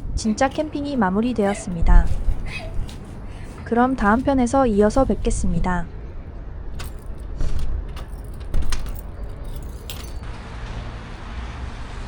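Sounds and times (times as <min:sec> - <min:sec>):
objects clinking and knocking: 0:00.0 - 0:05.6, 0:06.7 - 0:10.2
steady low rumble: 0:00.0 - 0:10.4.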